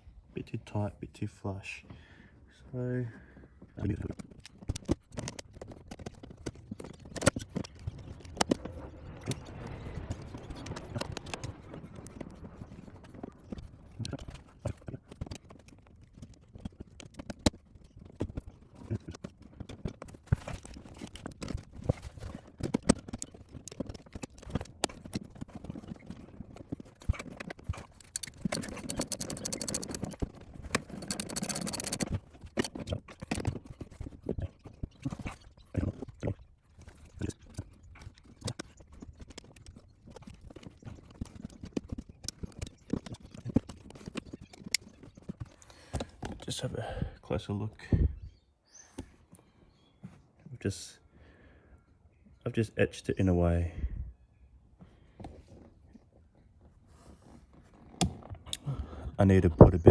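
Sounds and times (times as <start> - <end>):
metal parts and tools clicking: 4.0 - 46.5.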